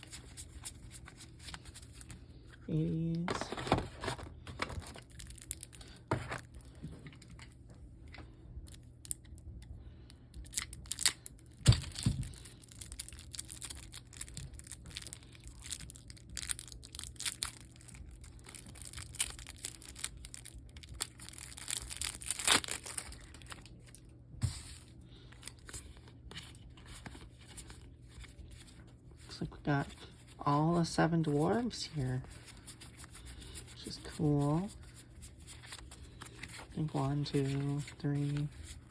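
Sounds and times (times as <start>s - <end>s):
plastic packaging crinkling: 3.2s - 7.5s, 10.4s - 28.8s.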